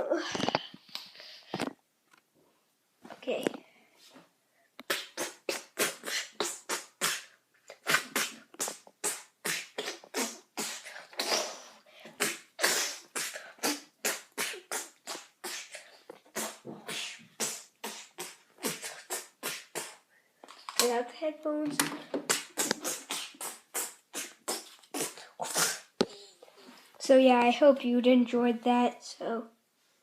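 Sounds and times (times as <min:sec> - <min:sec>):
boy making mouth percussion: 0:04.8 - 0:21.0, 0:21.6 - 0:26.5.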